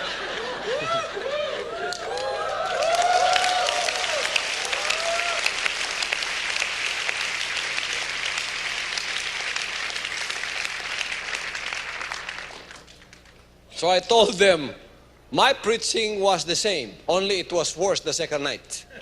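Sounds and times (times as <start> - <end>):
congregation applauding: 0.0 - 13.4.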